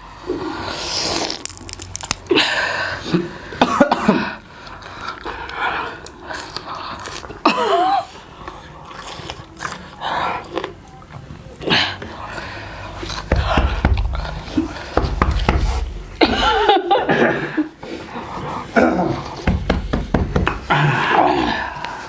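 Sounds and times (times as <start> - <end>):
chewing: 0.6 - 3.2, 4.6 - 13.3
people coughing: 3.6 - 4.4, 7.4 - 8.2, 16.2 - 17.7.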